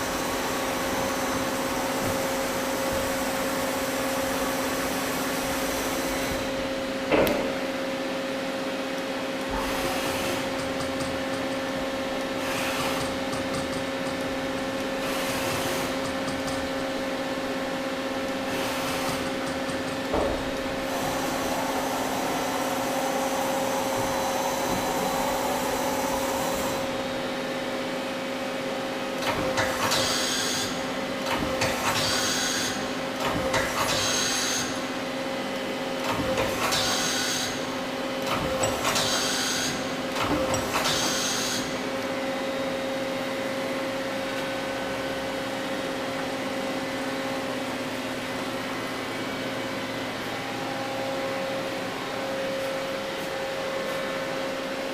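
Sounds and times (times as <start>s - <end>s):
lathe electric hum: 20.1s - 29.0s.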